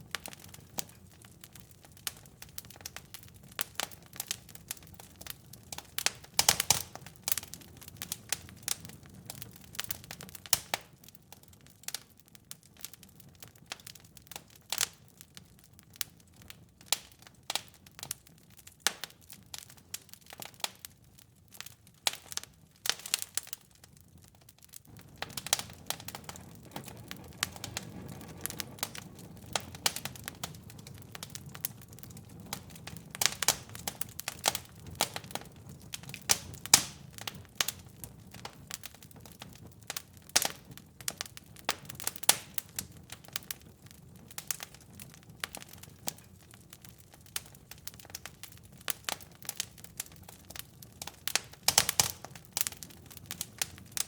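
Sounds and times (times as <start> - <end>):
fire popping and snapping: 0.0 - 54.0
wood fire crackling: 0.0 - 54.0
rush of flames: 24.9 - 46.6.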